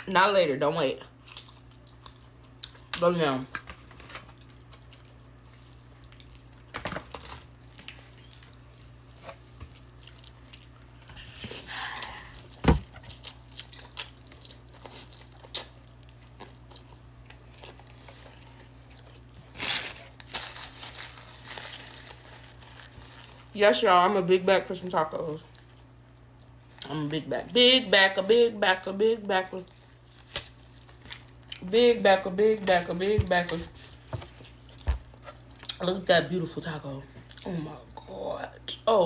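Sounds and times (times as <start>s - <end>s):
person chewing and lip-smacking: 1.2s - 3.0s.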